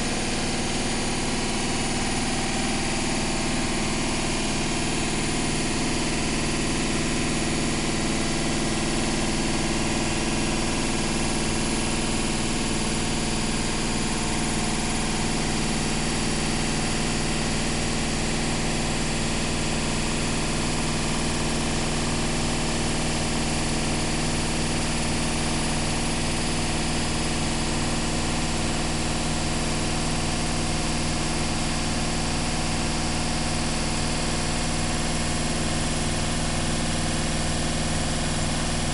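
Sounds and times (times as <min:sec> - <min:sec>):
washing machine humming: 0:00.0 - 0:21.0.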